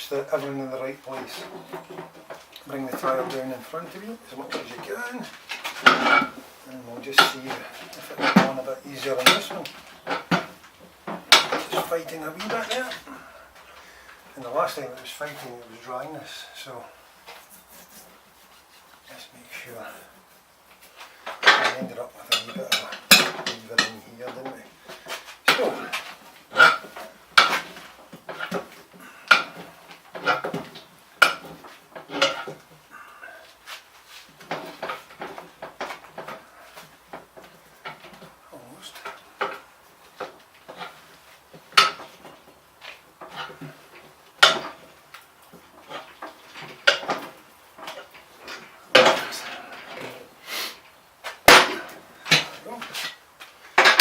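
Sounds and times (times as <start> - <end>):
metal tools clanking on wheel: 0.0 - 17.5, 18.5 - 50.3, 51.2 - 54.0
metal knocks and scrapes: 0.4 - 13.1.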